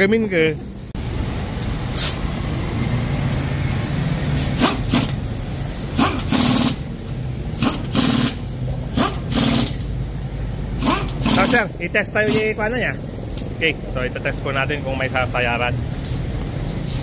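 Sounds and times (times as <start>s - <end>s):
engine running: 0.2s - 14.9s
pneumatic impact wrench bursts: 1.9s - 2.2s, 4.2s - 10.0s, 10.7s - 13.5s.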